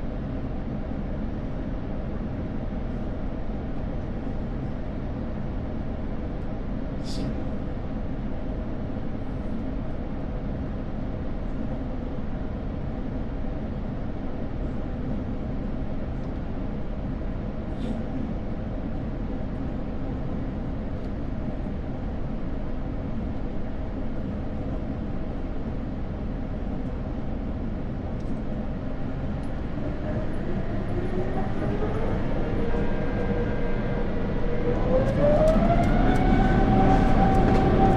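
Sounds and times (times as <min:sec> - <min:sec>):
jet engine cabin drone: 0:00.0 - 0:37.9
jet engines spooling up whine: 0:14.5 - 0:37.9.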